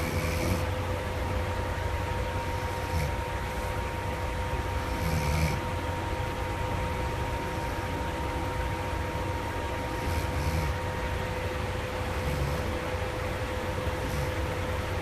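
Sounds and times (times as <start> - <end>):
person snoring: 0.0 - 0.8, 2.6 - 3.8, 4.8 - 5.7, 9.8 - 11.0, 12.1 - 12.9, 13.9 - 14.6
constant hum: 0.0 - 15.0.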